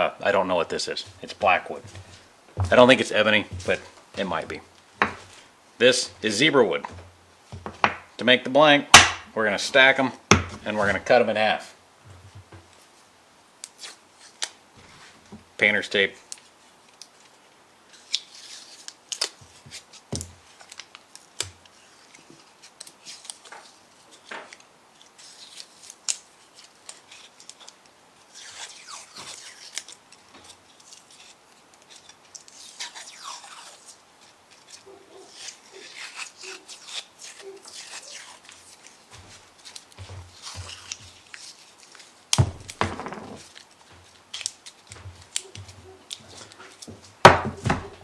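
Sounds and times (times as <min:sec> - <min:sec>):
tape peeling off: 0:13.6 - 0:14.6, 0:16.3 - 0:48.0
wood knocking on bench: 0:42.4 - 0:43.4.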